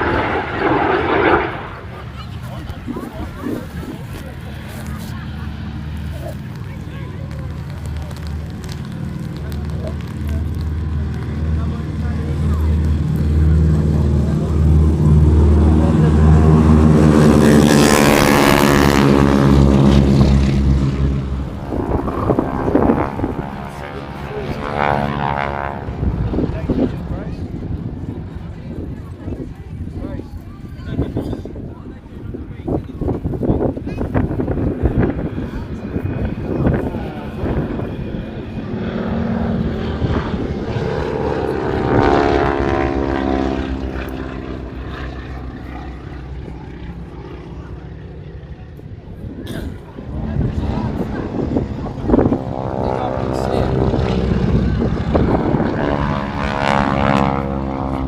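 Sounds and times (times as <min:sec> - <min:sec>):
rushing air: 0:00.0 - 0:02.2
propeller aircraft flying past: 0:00.0 - 0:58.0.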